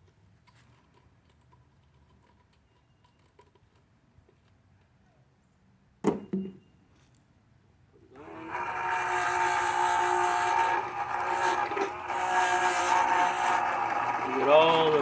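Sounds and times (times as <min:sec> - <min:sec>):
electric pump humming and whining: 0:08.1 - 0:15.0.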